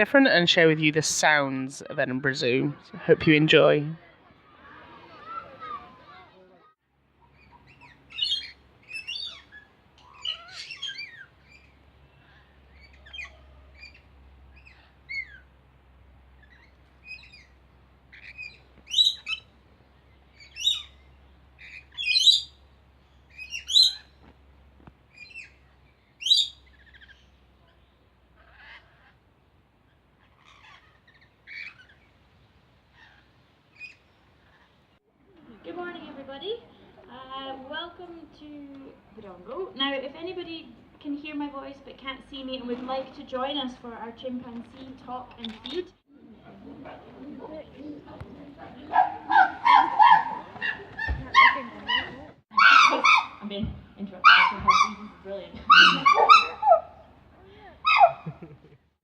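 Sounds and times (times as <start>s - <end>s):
lorikeets screeching: 7.2s - 15.5s, 16.4s - 24.2s, 25.1s - 27.4s, 28.4s - 29.2s, 29.9s - 32.1s, 32.9s - 34.8s, 48.8s - 53.5s, 54.2s - 57.2s, 57.8s - 58.3s.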